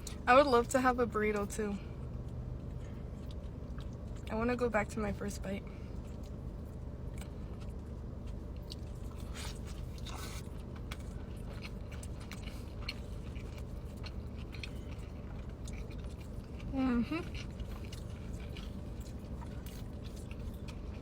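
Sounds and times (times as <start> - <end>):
steady low hum: 0.0 - 21.0
person chewing food: 2.0 - 4.3, 5.9 - 21.0
food crunching: 6.0 - 21.0.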